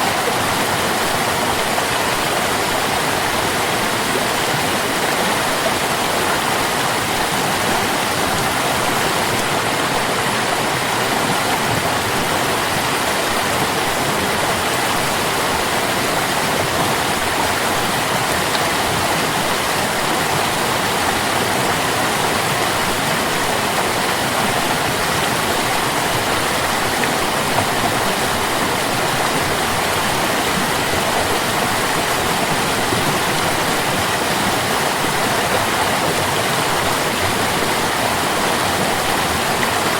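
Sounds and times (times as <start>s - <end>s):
water stream flowing: 0.0s - 39.9s.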